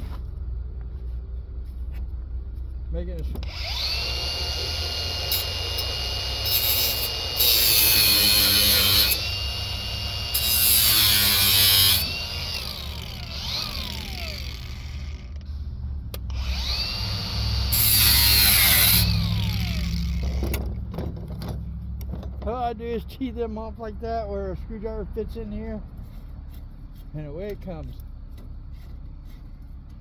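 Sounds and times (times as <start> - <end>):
drill grinding on metal: 3.4 - 15.4, 16.3 - 20.6
power drill motor whining: 3.4 - 15.5, 16.3 - 20.6.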